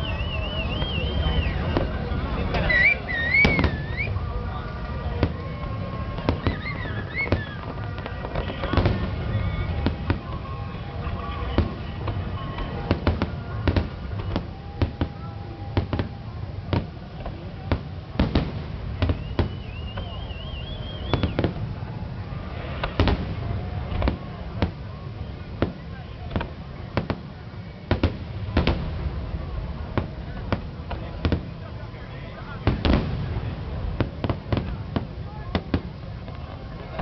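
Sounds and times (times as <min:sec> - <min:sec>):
firework whistle: 0:00.0 - 0:04.4, 0:05.2 - 0:27.2
fireworks bangs: 0:00.0 - 0:37.0.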